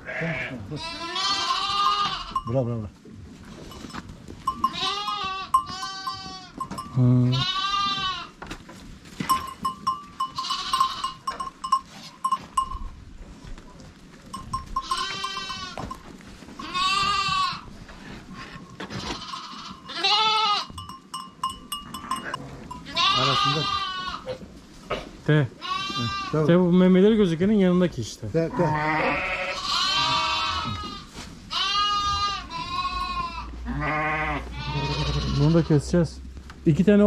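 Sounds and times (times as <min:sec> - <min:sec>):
sheep and lambs bleating: 0:00.0 - 0:02.5, 0:03.4 - 0:08.4, 0:09.3 - 0:12.7, 0:14.3 - 0:25.0, 0:25.6 - 0:26.5, 0:28.5 - 0:35.9
small bell clinking: 0:01.8 - 0:02.7, 0:03.7 - 0:07.2, 0:09.2 - 0:13.0, 0:14.3 - 0:16.8, 0:18.4 - 0:23.1.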